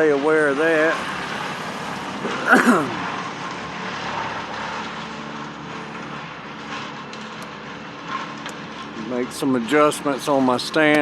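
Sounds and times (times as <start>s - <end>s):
vehicle engine humming: 0.6s - 3.8s.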